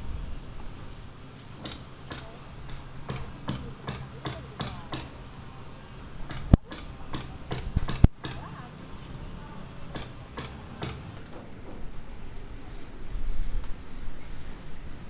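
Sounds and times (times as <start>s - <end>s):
hammer striking: 1.4s - 11.4s.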